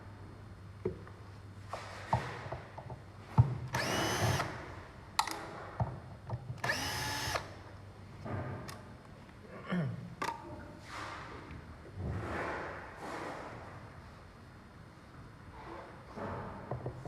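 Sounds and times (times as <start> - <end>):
power drill whirring: 3.7 - 4.6, 6.6 - 7.5.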